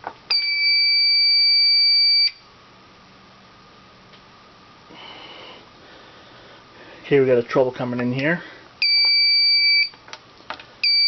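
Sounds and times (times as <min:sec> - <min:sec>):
high-pitched alarm panel tone: 0:00.3 - 0:02.4, 0:08.8 - 0:10.0.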